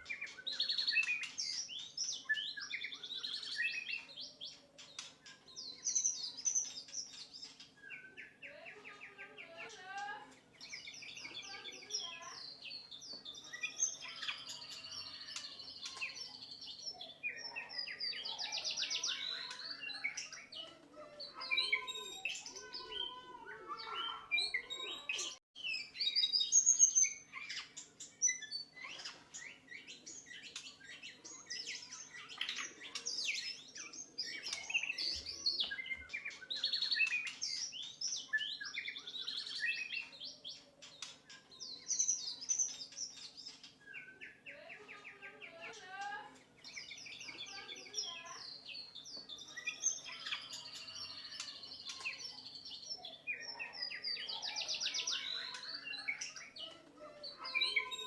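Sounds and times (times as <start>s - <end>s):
bird singing whistles and trills: 0.0s - 8.4s.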